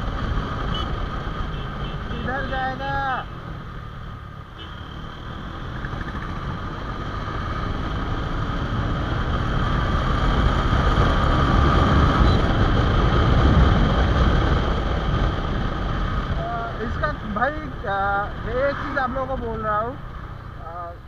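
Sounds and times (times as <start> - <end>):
wind rushing over microphone: 5.4 - 19.8.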